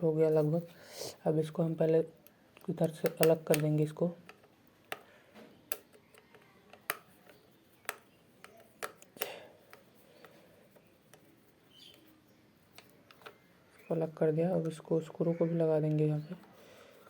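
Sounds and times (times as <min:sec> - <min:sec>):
plastic fan parts clicking and knocking: 0:02.6 - 0:12.1, 0:12.7 - 0:13.4.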